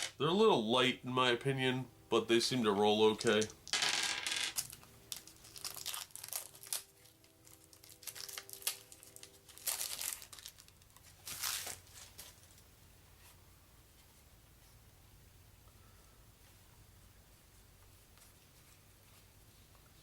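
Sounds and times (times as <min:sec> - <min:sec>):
plastic wrapping crinkling and tearing: 0:04.6 - 0:12.6.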